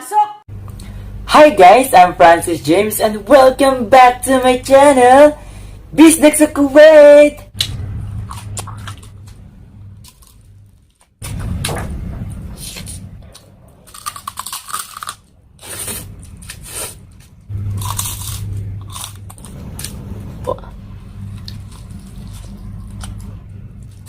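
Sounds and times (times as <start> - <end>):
steady low hum: 0.5 - 24.0
crunchy food chewing: 13.4 - 20.0, 21.2 - 24.0.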